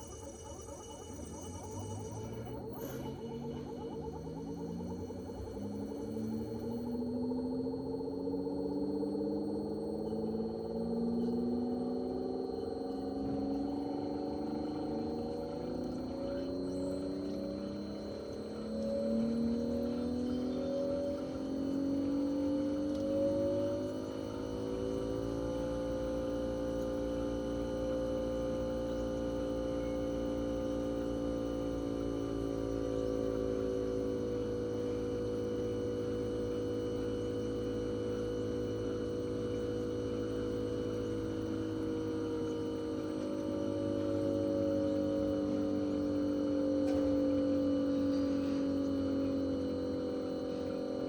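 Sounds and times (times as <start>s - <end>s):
compressor humming: 0.0s - 51.0s.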